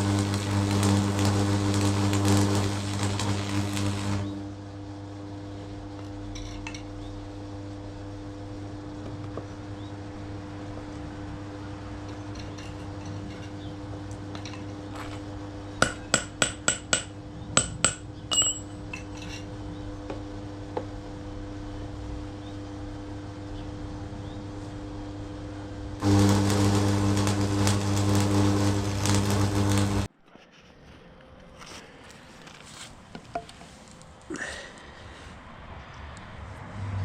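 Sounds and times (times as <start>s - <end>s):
low hum: 0.0s - 15.8s, 18.2s - 30.1s.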